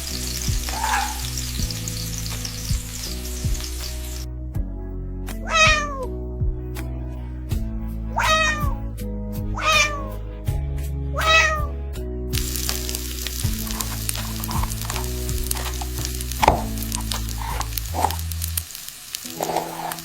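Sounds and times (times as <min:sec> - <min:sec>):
crackling sizzle: 0:00.0 - 0:04.3, 0:12.4 - 0:20.0
background music with bass line: 0:00.0 - 0:20.0
cat meowing: 0:05.4 - 0:06.1, 0:08.2 - 0:08.8, 0:09.6 - 0:10.2, 0:11.2 - 0:11.7.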